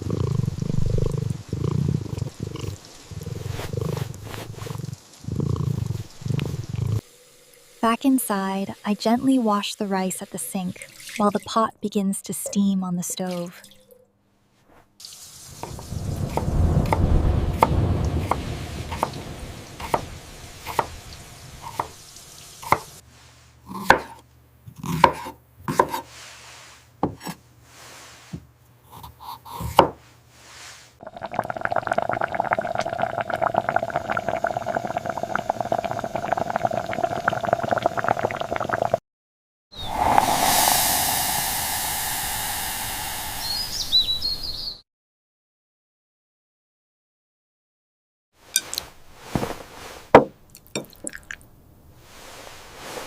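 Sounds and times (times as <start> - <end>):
knife chopping on wooden board: 23.7 - 24.2, 24.8 - 26.0
low rumble: 39.8 - 44.6
steady humming noise: 39.9 - 44.2.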